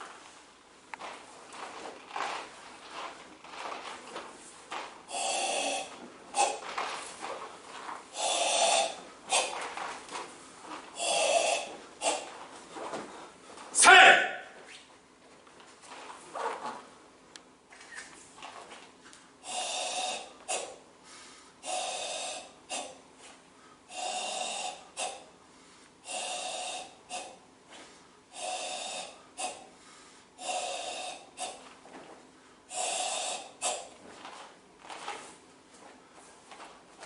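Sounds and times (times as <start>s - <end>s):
person exhaling forcefully: 5.1s - 6.6s, 11.0s - 12.3s, 19.4s - 23.0s, 23.9s - 25.3s, 28.4s - 31.6s, 32.7s - 33.9s.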